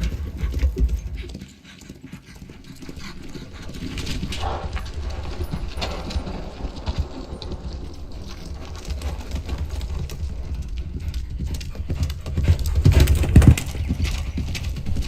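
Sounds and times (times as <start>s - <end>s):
horse hoofbeats: 0.0s - 15.0s.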